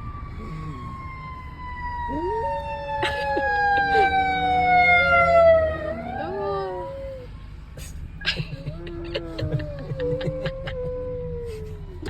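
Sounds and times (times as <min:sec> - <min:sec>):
ambulance siren wailing: 0:00.0 - 0:12.0
dog howling: 0:04.7 - 0:07.3.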